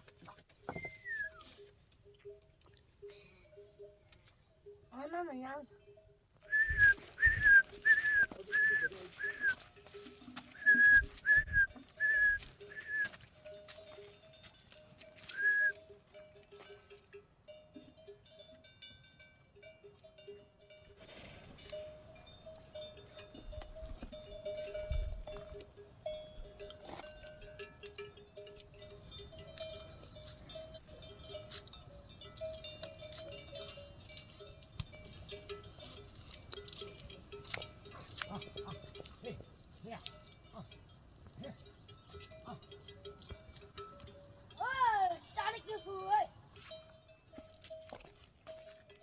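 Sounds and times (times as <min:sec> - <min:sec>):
short high whistle: 0:00.7 - 0:01.4, 0:06.5 - 0:09.6, 0:10.6 - 0:13.1, 0:15.3 - 0:15.8
livestock bells clinking: 0:00.8 - 0:49.0.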